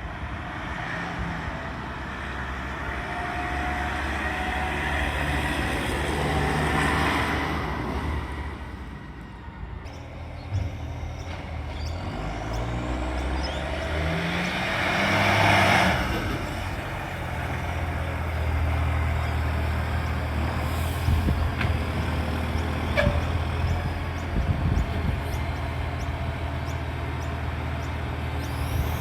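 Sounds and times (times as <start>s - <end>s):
diesel truck engine revving: 0.0s - 29.0s
loud rasping exhaust burst: 10.5s - 29.0s.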